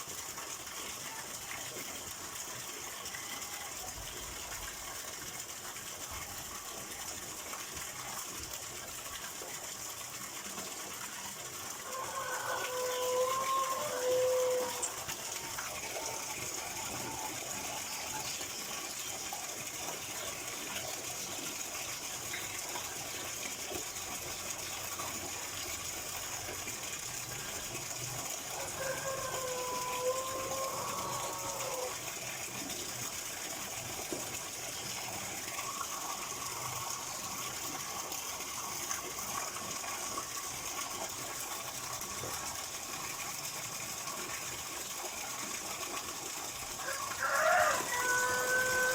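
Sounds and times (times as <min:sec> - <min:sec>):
flowing water rushing: 0:00.0 - 0:48.9
rooster crowing: 0:11.8 - 0:15.0, 0:28.6 - 0:31.9, 0:46.8 - 0:48.9.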